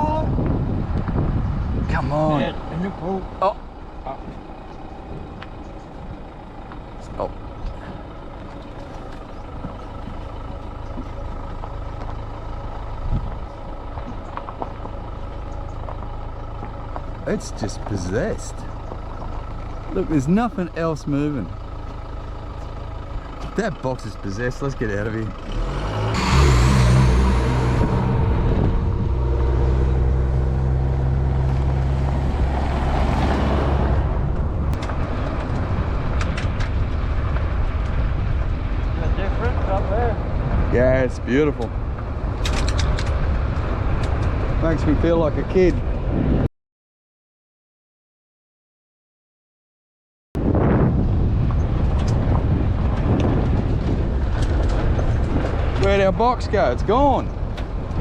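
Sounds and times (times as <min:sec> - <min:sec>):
vehicle engine idling: 0:00.0 - 0:46.3.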